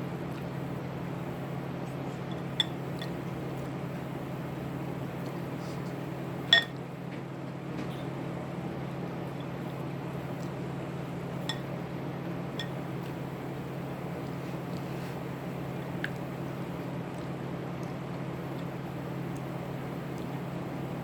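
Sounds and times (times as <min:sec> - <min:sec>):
steady low hum: 0:00.0 - 0:21.0
tableware clinking: 0:06.5 - 0:06.7.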